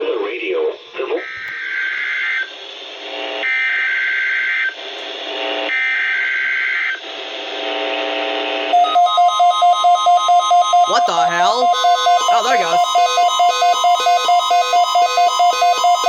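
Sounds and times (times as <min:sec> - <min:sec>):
pulsing two-tone electronic alert beep: 0:08.8 - 0:16.0
radio hiss: 0:11.0 - 0:13.0.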